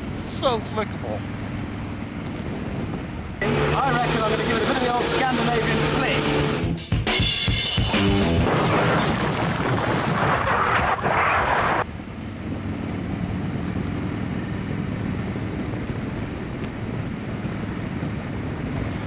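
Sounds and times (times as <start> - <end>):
wind rush on microphone: 0.0 - 3.4, 8.4 - 19.0.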